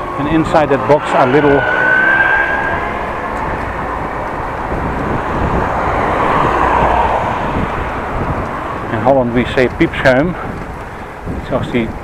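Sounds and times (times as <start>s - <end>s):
short high whine: 0.0s - 5.1s
rushing wind: 0.0s - 12.0s
traffic noise: 0.0s - 12.0s.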